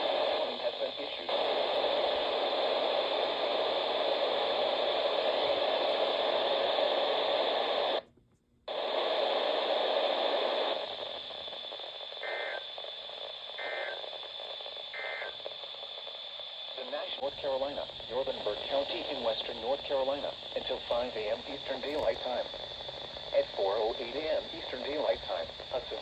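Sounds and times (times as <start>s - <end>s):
radio static hiss: 0.0s - 8.1s, 8.7s - 26.0s
two-tone data bursts: 11.5s - 26.0s.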